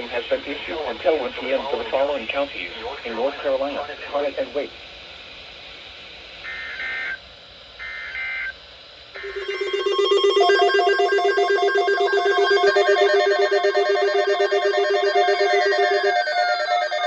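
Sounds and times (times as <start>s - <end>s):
data-burst squawks: 9.2s - 17.0s
rapidly trilling alert tone: 9.2s - 17.0s.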